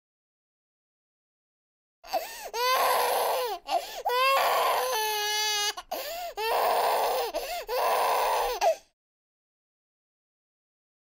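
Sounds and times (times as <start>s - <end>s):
baby crying: 2.1s - 8.9s.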